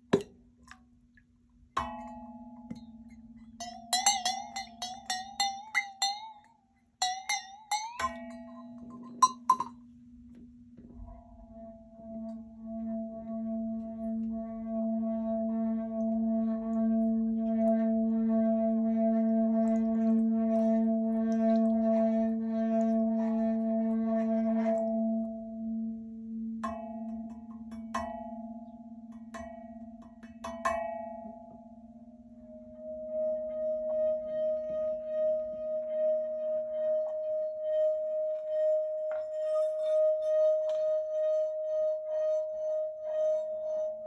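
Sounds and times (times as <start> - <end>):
singing bowl strikes: 1.8 - 9.8
singing bowl ringing: 1.8 - 9.9, 36.3 - 44.0.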